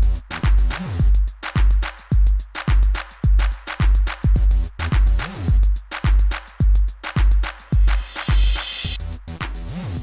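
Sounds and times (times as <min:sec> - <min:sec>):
electronic music with heavy kick drum: 0:00.0 - 0:10.0.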